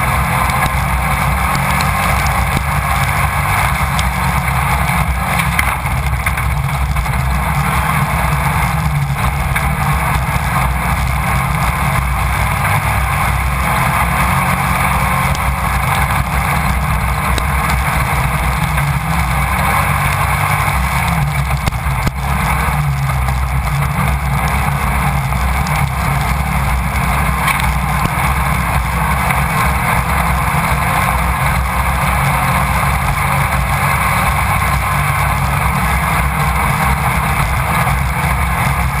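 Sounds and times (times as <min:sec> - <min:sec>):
race car engine running hard: 0:00.0 - 0:39.0.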